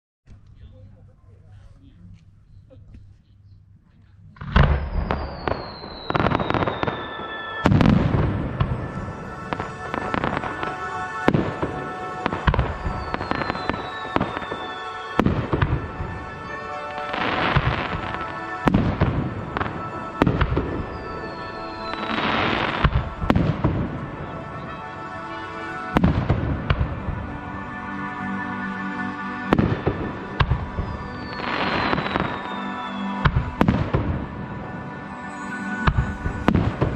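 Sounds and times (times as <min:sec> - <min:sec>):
background music with held notes: 0:00.3 - 0:36.9
fireworks booms and crackling: 0:04.4 - 0:36.9
falling firework whistles: 0:04.5 - 0:15.8, 0:19.6 - 0:23.8, 0:29.5 - 0:34.3.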